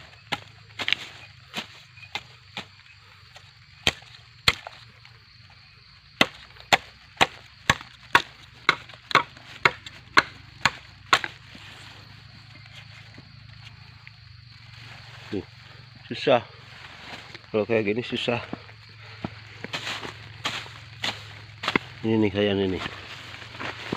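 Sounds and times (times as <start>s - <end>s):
blade chopping bamboo: 0.2s - 2.7s, 3.3s - 4.8s, 6.2s - 11.4s.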